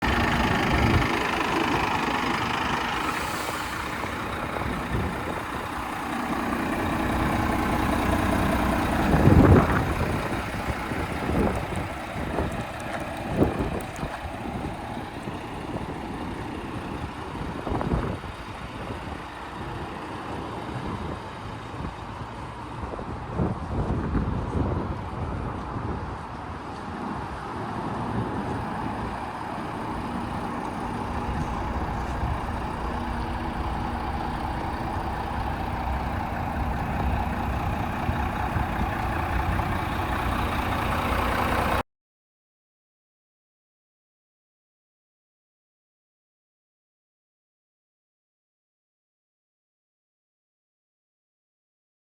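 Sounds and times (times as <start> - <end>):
diesel truck engine idling: 0.0 - 24.9, 27.9 - 41.8.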